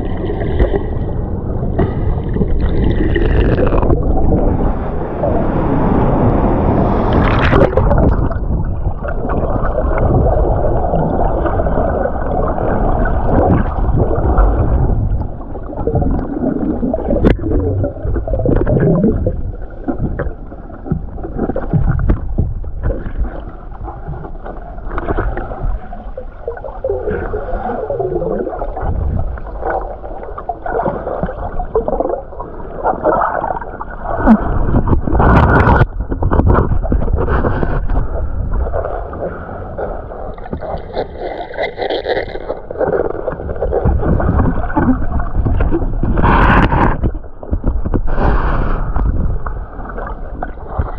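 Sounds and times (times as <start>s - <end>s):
underwater waterfall rush: 0.0s - 24.2s.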